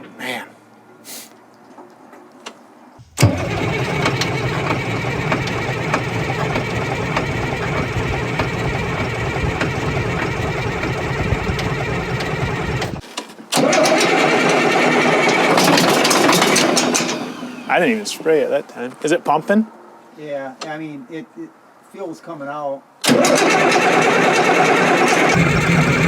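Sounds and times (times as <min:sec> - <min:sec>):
diesel engine cranking on starter: 0:03.0 - 0:18.1, 0:23.0 - 0:26.0.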